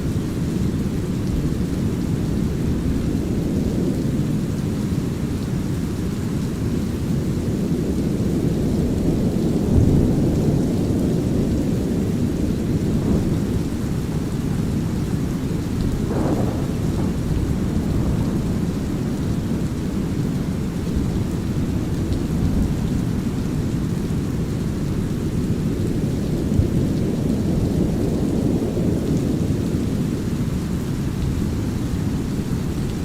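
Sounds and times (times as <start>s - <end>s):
light rain: 0.0s - 33.0s
rolling thunder: 7.5s - 33.0s
brown noise: 10.6s - 24.2s.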